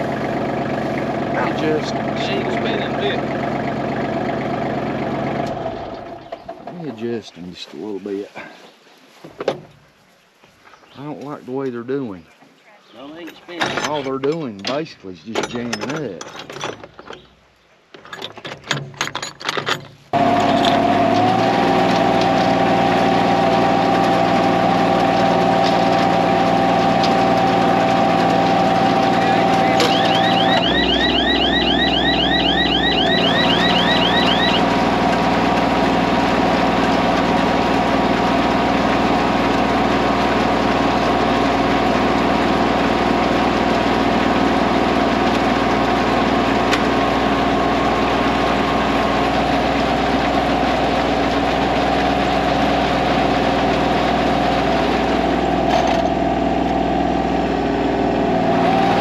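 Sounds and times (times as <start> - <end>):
tractor diesel engine running: 0.0 - 8.2, 20.1 - 59.0
metallic clicks and clanks: 13.6 - 17.3.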